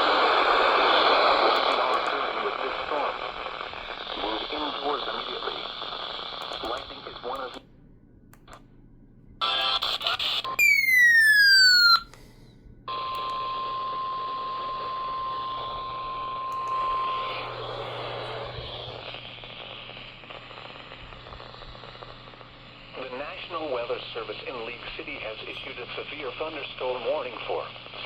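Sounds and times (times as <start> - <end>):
radio static hiss: 0.0 - 7.6, 9.4 - 10.6, 13.2 - 28.0
electronic alert tone sweeping down: 10.6 - 12.1.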